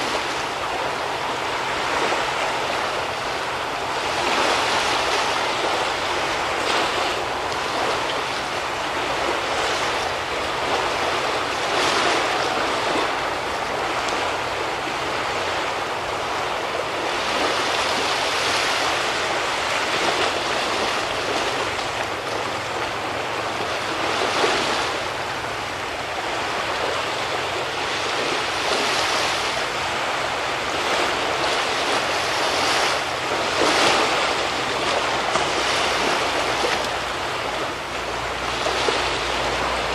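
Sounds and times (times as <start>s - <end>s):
sea waves washing on shore: 0.0s - 39.9s.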